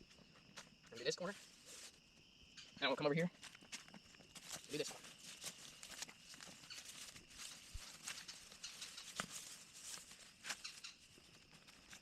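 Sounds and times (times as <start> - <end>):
footsteps on woodland floor: 0.0 - 2.3, 3.3 - 12.0
tent fabric rustling: 4.4 - 12.0.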